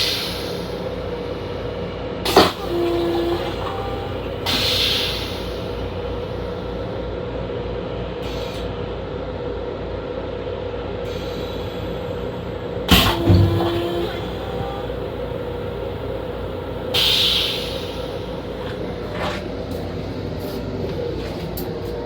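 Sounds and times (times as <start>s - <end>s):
burst of hiss: 0.0s - 0.9s, 2.3s - 5.8s, 12.9s - 19.1s
train interior rumble and hum: 0.0s - 22.0s.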